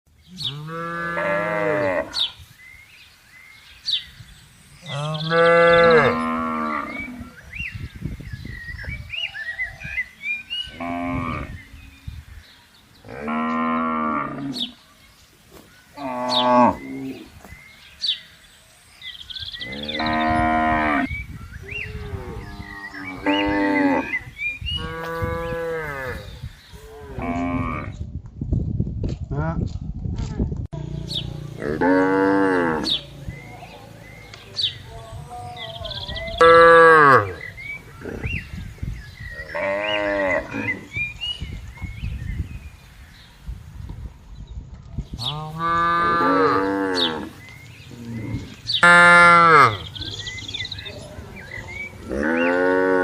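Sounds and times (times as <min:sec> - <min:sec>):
cattle mooing: 0:00.4 - 0:02.2.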